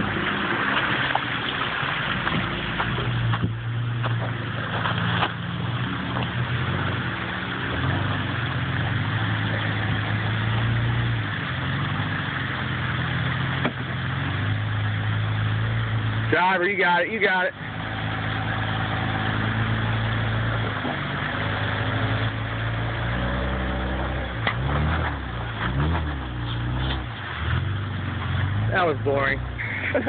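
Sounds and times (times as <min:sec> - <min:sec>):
truck engine running under load: 0:00.0 - 0:16.4.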